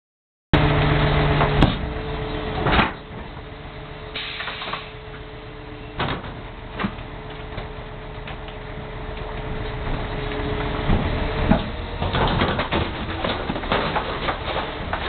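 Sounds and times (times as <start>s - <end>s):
truck engine drone: 0.5s - 15.0s
packer blade crushing trash bags: 11.6s - 15.0s.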